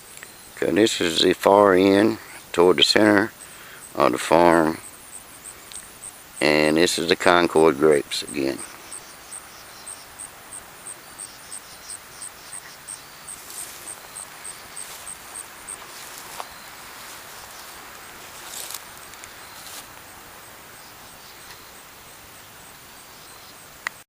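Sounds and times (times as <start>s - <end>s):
insect chirping: 0.0s - 24.0s
rustling swishes: 13.3s - 20.1s.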